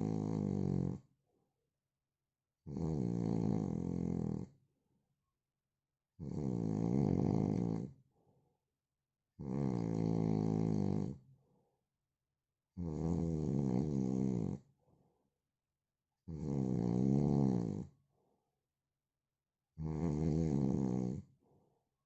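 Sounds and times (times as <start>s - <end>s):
man snoring: 0.0s - 1.0s, 2.7s - 4.6s, 6.2s - 7.9s, 9.4s - 11.2s, 12.8s - 14.6s, 16.3s - 17.9s, 19.8s - 21.3s
faint breath: 8.1s - 8.6s, 11.4s - 11.8s, 14.8s - 15.3s, 21.4s - 22.0s.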